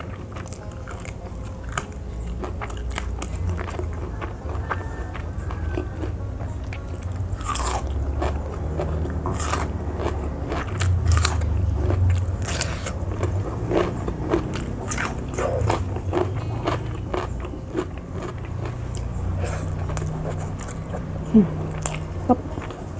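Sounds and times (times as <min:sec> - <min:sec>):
person chewing crunchy vegetables: 0:00.0 - 0:22.9.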